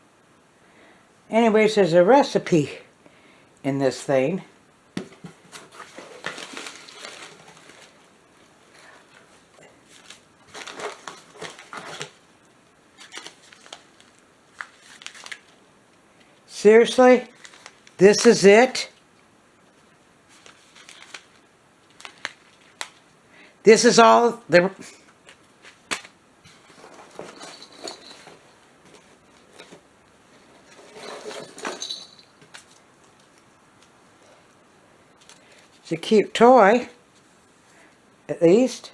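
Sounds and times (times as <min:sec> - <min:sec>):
packaging rustling: 0:05.0 - 0:12.3, 0:12.9 - 0:15.7, 0:17.2 - 0:18.4, 0:20.3 - 0:23.1, 0:25.2 - 0:33.4.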